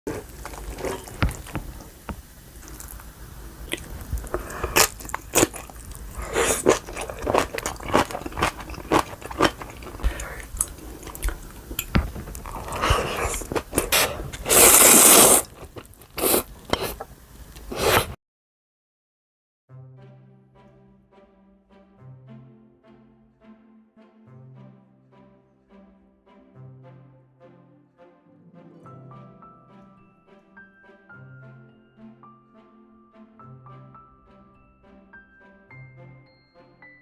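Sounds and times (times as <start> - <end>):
crunchy bites and chewing: 0.1 - 1.8, 3.7 - 17.1.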